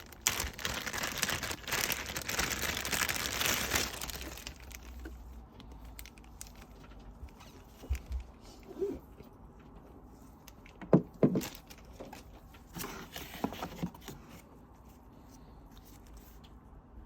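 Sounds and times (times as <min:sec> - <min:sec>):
packaging rustling: 0:00.0 - 0:05.3.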